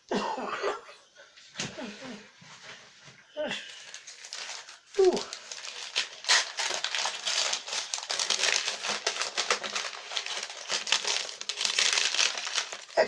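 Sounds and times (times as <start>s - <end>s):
packaging crinkling and rustling: 3.6s - 13.0s.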